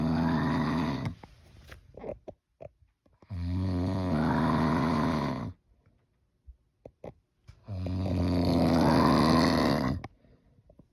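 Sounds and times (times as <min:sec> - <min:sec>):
loud snoring: 0:00.0 - 0:01.2, 0:03.3 - 0:05.6, 0:07.7 - 0:10.0.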